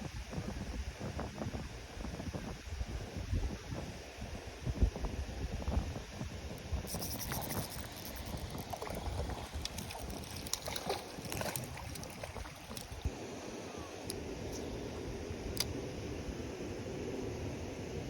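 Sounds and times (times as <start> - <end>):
wind buffeting microphone: 4.6 - 13.2.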